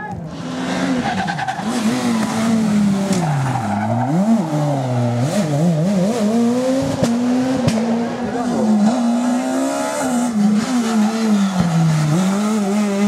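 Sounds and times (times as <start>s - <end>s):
rally car engine revving: 0.1s - 13.0s.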